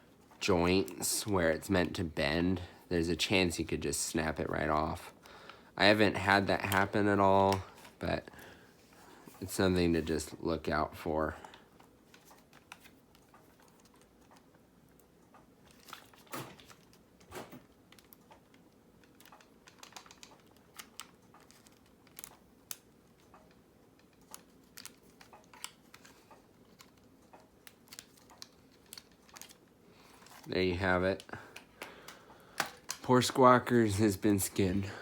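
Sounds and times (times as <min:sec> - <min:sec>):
plastic clips clicking: 0:17.9 - 0:29.6, 0:31.5 - 0:33.1.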